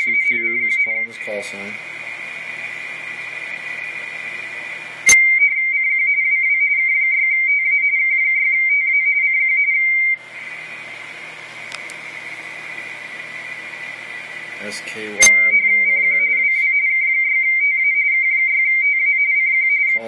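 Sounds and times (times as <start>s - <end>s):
radio band hiss: 0.0s - 5.2s, 10.2s - 16.7s
warbling two-tone radio signal: 0.0s - 5.6s, 10.2s - 17.8s
click: 11.7s - 12.0s.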